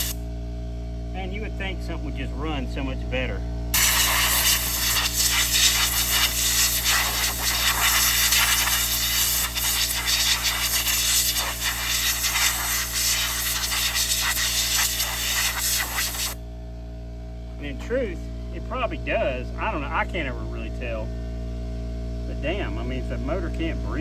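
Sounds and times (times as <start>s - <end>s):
compressed air blowgun hissing: 3.8s - 16.4s.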